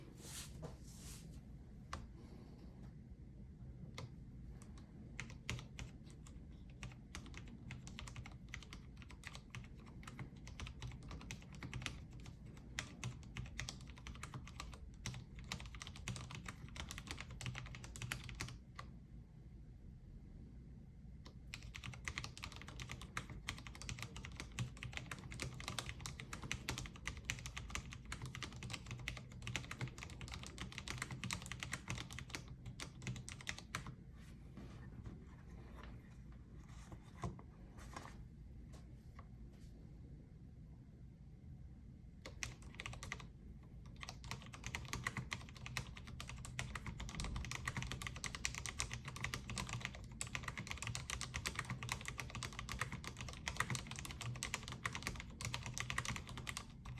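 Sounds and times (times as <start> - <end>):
keyboard typing: 3.9 - 18.6, 21.5 - 33.9, 42.2 - 56.9.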